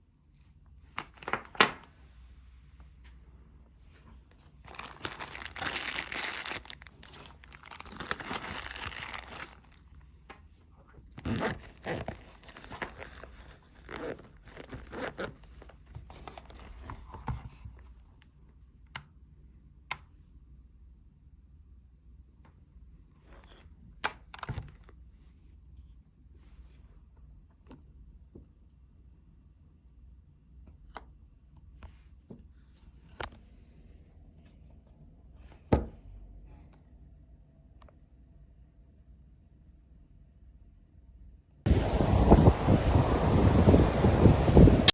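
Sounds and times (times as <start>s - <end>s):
rustling and crinkling: 0.4s - 18.1s.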